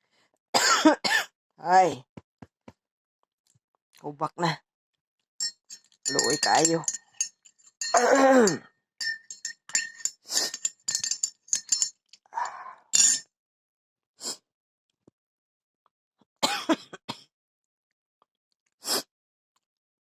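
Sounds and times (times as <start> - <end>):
spoon clinking against glass: 5.4 - 13.2.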